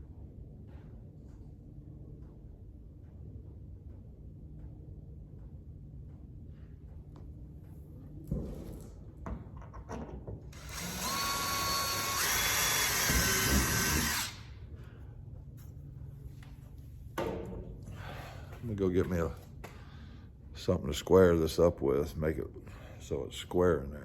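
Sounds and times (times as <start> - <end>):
power drill whining: 10.5 - 14.5.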